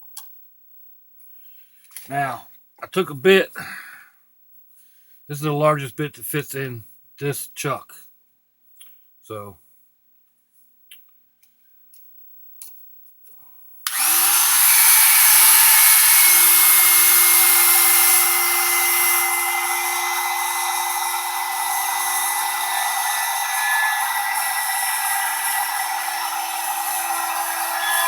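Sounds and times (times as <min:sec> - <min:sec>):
power drill running at high speed: 0:13.9 - 0:28.0.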